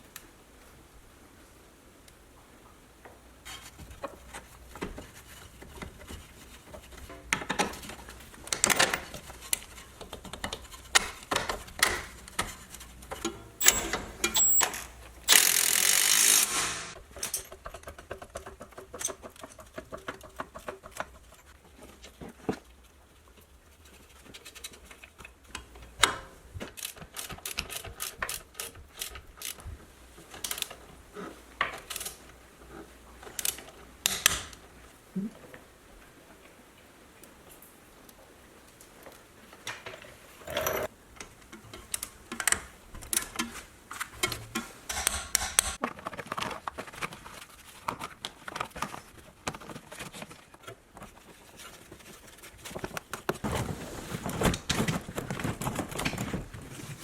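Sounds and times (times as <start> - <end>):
rapid clicking: 7.3 - 17.0
metal tool clicks and knocks: 8.5 - 16.3, 44.2 - 45.8.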